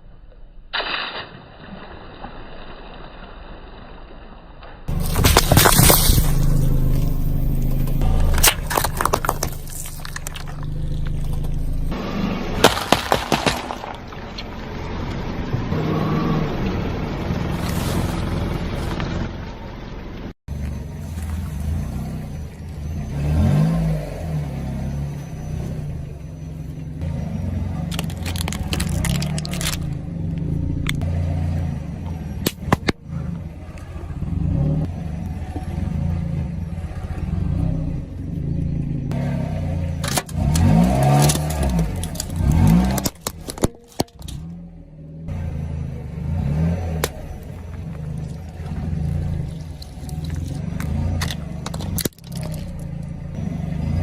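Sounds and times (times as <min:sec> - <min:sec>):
sharp cracks: 0:00.7 - 0:11.6, 0:12.5 - 0:14.5, 0:27.9 - 0:30.0, 0:49.5 - 0:53.1
clatter: 0:04.6 - 0:15.8, 0:27.8 - 0:31.1, 0:36.9 - 0:45.4, 0:46.4 - 0:54.0
car engine revving: 0:04.9 - 0:54.0.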